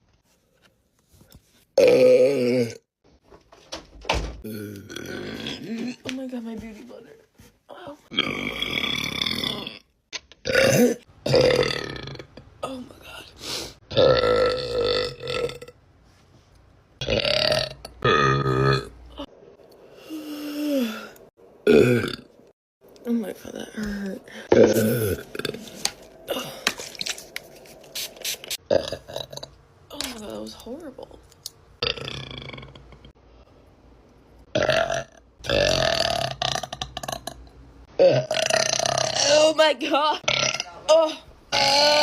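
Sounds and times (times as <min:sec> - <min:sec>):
woman burping: 0:04.4 - 0:06.0, 0:10.5 - 0:12.9, 0:17.0 - 0:18.9, 0:21.6 - 0:22.3, 0:24.5 - 0:25.7, 0:26.3 - 0:26.8, 0:38.0 - 0:39.5, 0:40.2 - 0:42.0.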